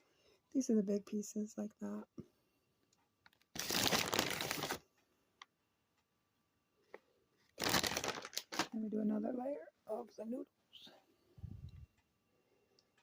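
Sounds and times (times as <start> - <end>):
plastic packaging crinkling: 3.3 - 4.9, 7.4 - 8.8.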